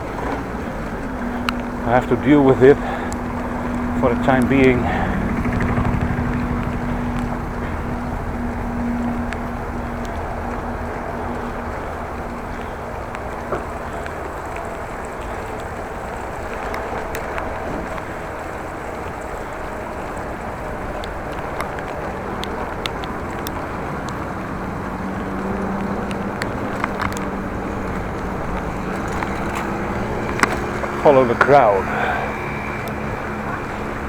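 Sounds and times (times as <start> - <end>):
low steady hum: 0.0 - 34.0
wind and road noise: 0.0 - 34.0
sharp ticks: 0.2 - 18.1.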